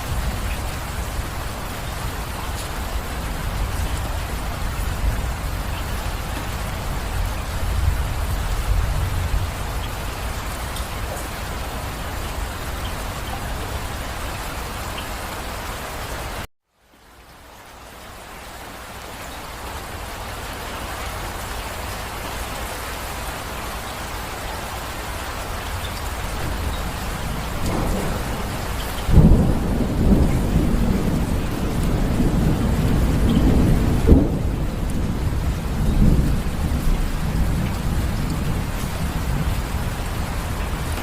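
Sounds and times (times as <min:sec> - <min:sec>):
thunder rumbling: 0:00.0 - 0:14.8, 0:25.7 - 0:41.0
heavy rain: 0:00.0 - 0:41.0.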